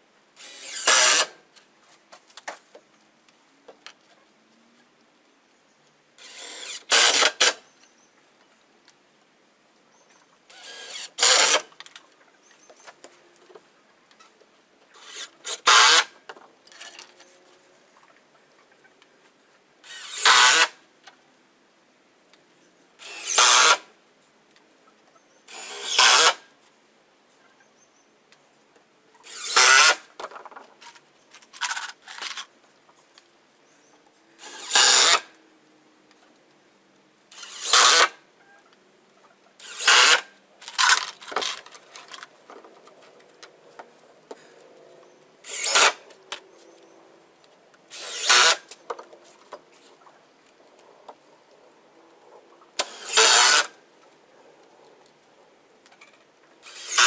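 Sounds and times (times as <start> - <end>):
power drill whirring in bursts: 0.4 - 1.4, 6.2 - 7.5, 10.5 - 11.6, 15.0 - 16.1, 19.9 - 20.7, 23.0 - 23.8, 25.5 - 26.4, 29.3 - 30.1, 34.4 - 35.3, 37.4 - 38.1, 39.6 - 40.9, 45.4 - 46.0, 47.9 - 48.8, 52.8 - 53.7, 56.6 - 57.0.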